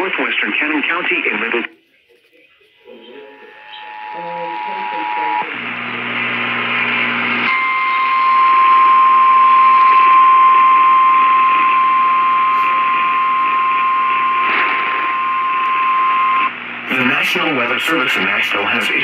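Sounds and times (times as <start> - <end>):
radio static hiss: 0.0 - 19.0
steady warning alarm tone: 2.8 - 5.6, 7.5 - 18.0.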